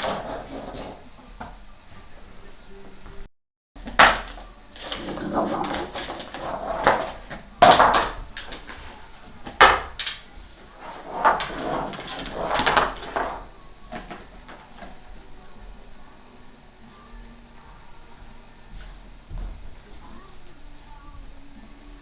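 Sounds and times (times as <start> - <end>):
toys knocking and scraping: 0.0 - 1.6, 3.9 - 15.0.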